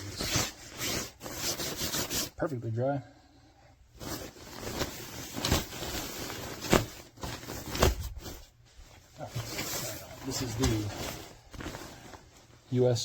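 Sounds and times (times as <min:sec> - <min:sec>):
jacket fabric rustling: 0:00.0 - 0:02.4, 0:03.9 - 0:13.0
fabric swishes: 0:04.0 - 0:12.7.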